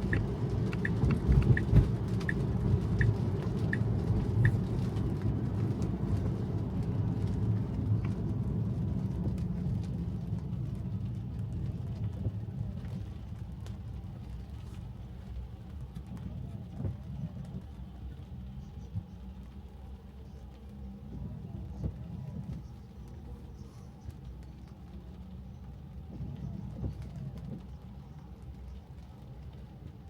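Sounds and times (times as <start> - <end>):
road and tyre noise in car cabin: 0.0 - 30.0.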